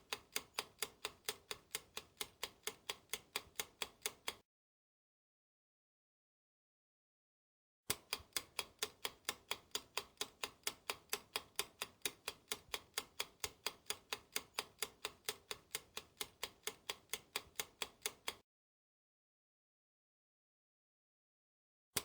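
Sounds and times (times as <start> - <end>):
clock ticking: 0.0 - 4.4, 7.9 - 18.4.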